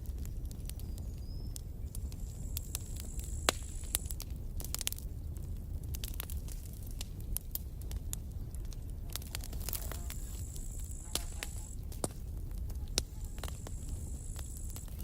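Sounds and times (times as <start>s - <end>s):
campfire crackling and popping: 0.0s - 15.0s
low rumble of flame: 0.0s - 15.0s.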